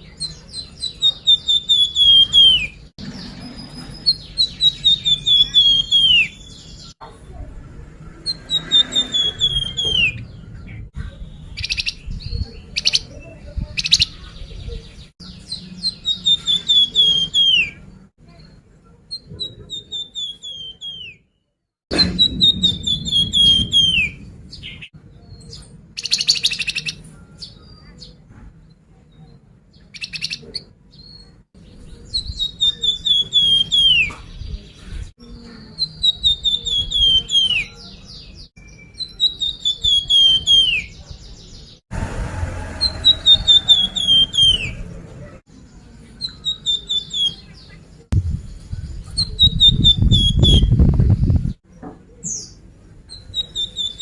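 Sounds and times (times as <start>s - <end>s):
songbird singing: 0.0s - 21.4s, 22.0s - 41.8s, 42.8s - 54.0s
harsh bird chattering calls: 8.1s - 10.9s.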